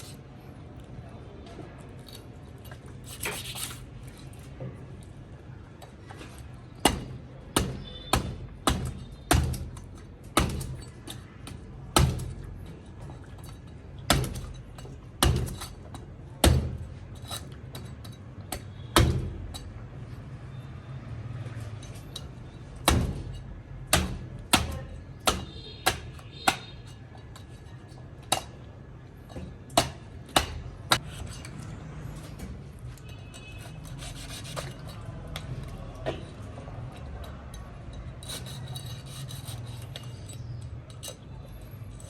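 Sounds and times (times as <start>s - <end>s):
short scrape: 33.4s - 34.9s.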